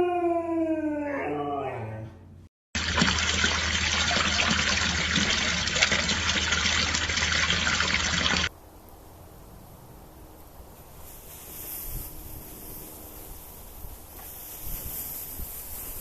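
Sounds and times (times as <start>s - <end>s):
water running: 2.8s - 8.5s
faint hiss: 8.6s - 16.0s.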